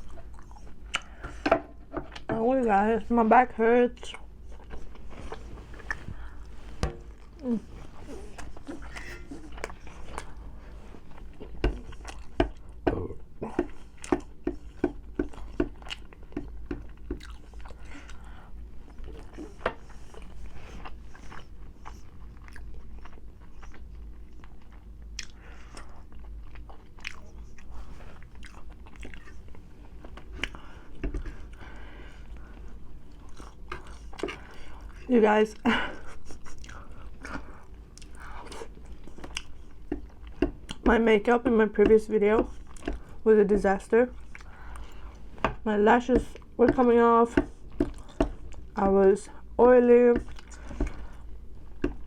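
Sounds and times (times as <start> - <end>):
chewing and biting food: 0.0 - 1.2, 4.1 - 35.1, 36.0 - 40.9, 42.3 - 43.2, 47.4 - 48.8, 50.2 - 52.0.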